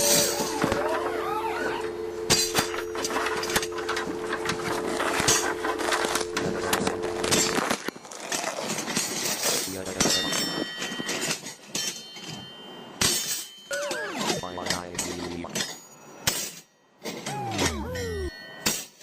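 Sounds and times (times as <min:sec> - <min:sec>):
clinks and crashing impacts: 0:08.7 - 0:14.4
warbling sliding tones: 0:17.3 - 0:18.3.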